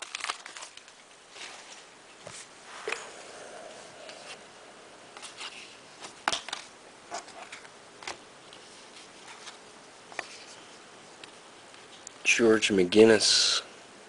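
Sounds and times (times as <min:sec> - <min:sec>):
cards clicking and snapping: 0:00.0 - 0:01.0.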